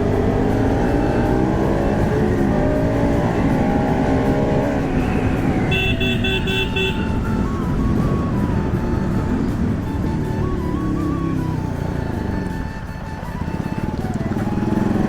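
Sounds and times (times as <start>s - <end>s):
motorcycle engine running: 0.0s - 15.0s
wind rumble on microphone: 0.0s - 15.0s
horn short beeps: 5.6s - 7.4s.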